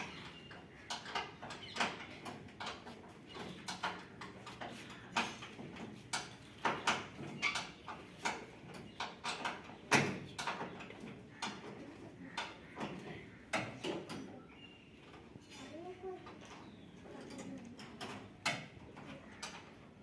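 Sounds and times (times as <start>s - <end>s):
knocks and clatter: 0.0s - 14.4s.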